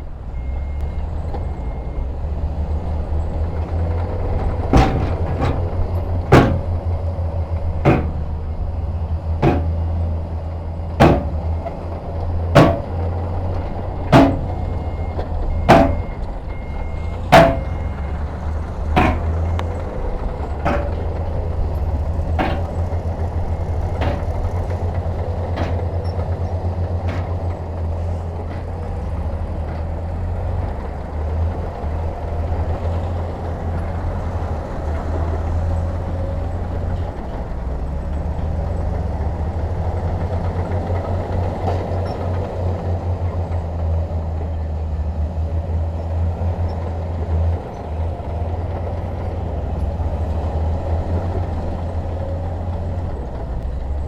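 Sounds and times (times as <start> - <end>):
diesel truck engine running: 0.0 - 54.0
reversing beeps: 0.3 - 2.2, 13.7 - 18.5
sharp metallic bangs: 4.3 - 7.0, 7.7 - 8.6, 9.4 - 10.0, 11.0 - 11.7, 12.5 - 13.3, 14.0 - 15.0, 15.6 - 16.6, 17.2 - 21.6, 22.2 - 26.1, 27.0 - 27.5.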